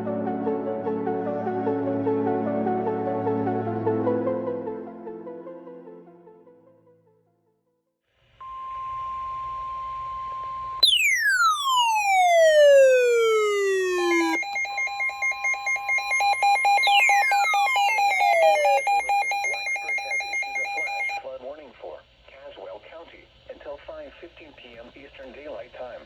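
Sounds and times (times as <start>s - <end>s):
falling electronic tone: 10.8s - 21.2s
high electronic beep: 10.8s - 21.2s
pulsing electronic warble: 10.8s - 21.2s.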